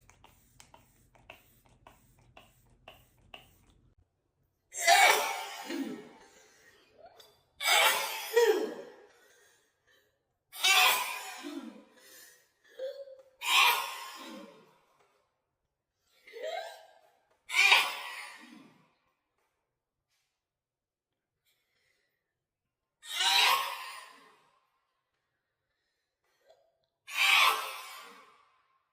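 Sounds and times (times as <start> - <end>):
woman sneezing: 4.8 - 6.4, 7.6 - 9.0, 10.6 - 11.9.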